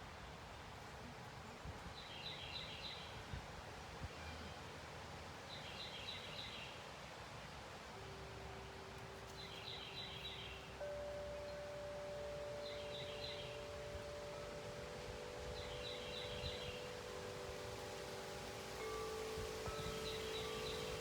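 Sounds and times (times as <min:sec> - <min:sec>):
low rumble of wind: 0:00.0 - 0:21.0
songbird phrase: 0:00.2 - 0:03.3, 0:08.3 - 0:21.0
faint wind-chime tone: 0:03.8 - 0:05.0, 0:07.7 - 0:21.0.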